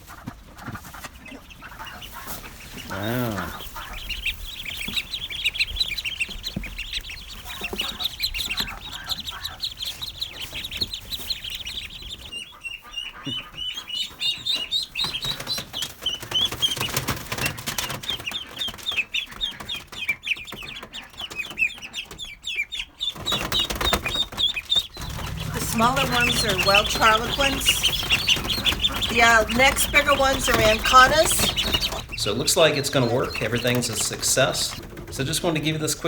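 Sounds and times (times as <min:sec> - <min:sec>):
rustling: 0:00.0 - 0:12.3, 0:23.4 - 0:36.0
ducklings peeping: 0:00.0 - 0:36.0.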